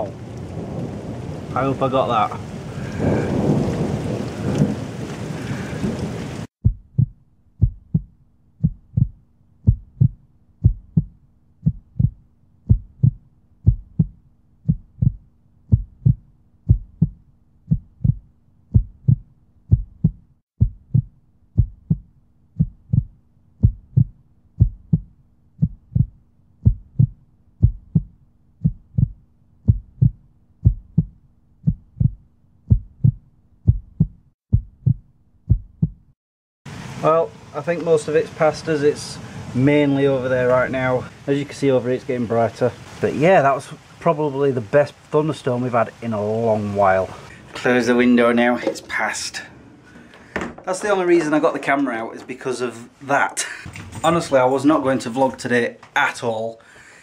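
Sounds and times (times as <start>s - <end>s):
rain noise: 0.0s - 6.5s, 36.7s - 57.0s
low heartbeat thuds: 6.6s - 36.2s.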